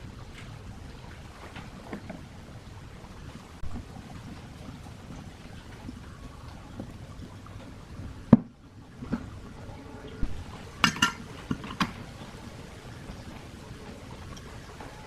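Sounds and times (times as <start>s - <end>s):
low background noise: 0.0s - 15.0s
metal parts knocking and clinking: 10.8s - 11.9s.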